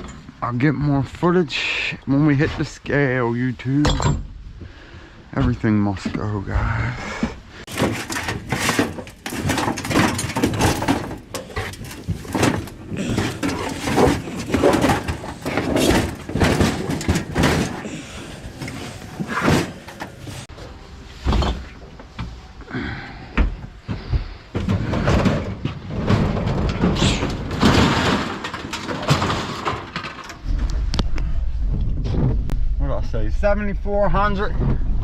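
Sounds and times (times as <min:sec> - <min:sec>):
knocks bangs and clanks: 0:07.7 - 0:20.2, 0:23.4 - 0:32.6
heavy thuds: 0:23.4 - 0:35.0.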